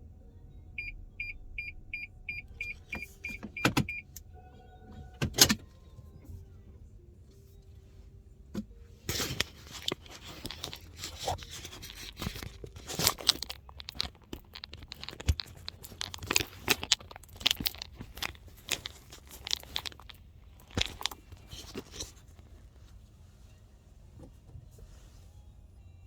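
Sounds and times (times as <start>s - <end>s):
rustling and crinkling handling noises: 7.3s - 25.5s.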